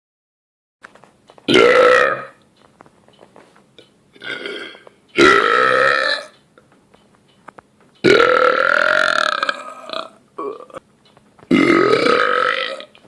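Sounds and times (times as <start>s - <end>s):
man burping loudly: 1.5s - 2.4s, 4.2s - 6.3s, 8.0s - 10.8s, 11.5s - 13.0s.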